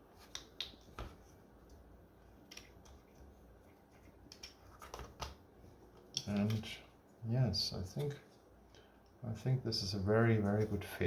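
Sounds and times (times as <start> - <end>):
light clicks and taps: 2.4 - 6.8.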